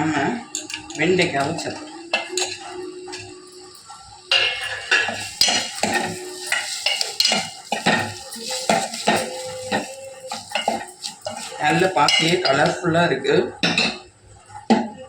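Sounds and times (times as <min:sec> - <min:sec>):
vegetables sizzling in oil: 0:00.6 - 0:12.8
spoon scraping against pan: 0:04.3 - 0:12.8.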